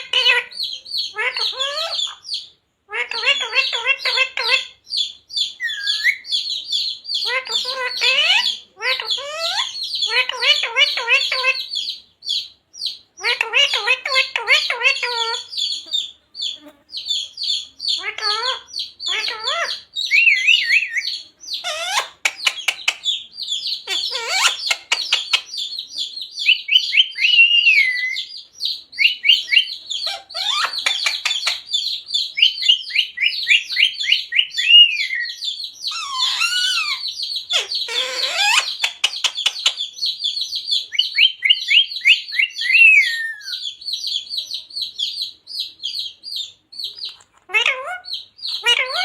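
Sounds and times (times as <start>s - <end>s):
parakeet harsh squawks: 0.0s - 2.2s, 2.9s - 4.8s, 7.2s - 11.8s, 13.2s - 16.1s, 18.0s - 23.0s, 23.8s - 25.6s, 29.0s - 39.9s, 47.4s - 49.0s
parakeet chattering chirps: 0.0s - 49.0s.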